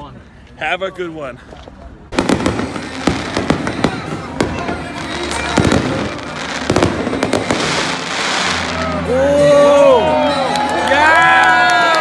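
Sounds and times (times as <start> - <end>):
fireworks bangs: 2.1 - 9.0
fireworks crackling: 2.1 - 9.2.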